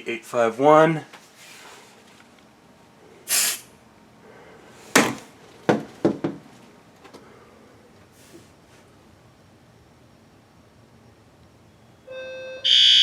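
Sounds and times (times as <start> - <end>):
aerosol spray hiss: 3.3 - 3.7.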